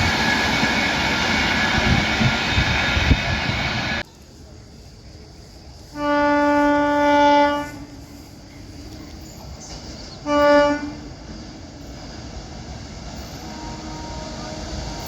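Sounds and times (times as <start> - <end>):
train running noise: 0.0 - 15.0
locomotive horn blasts: 6.0 - 7.9, 10.2 - 11.1, 13.4 - 14.7.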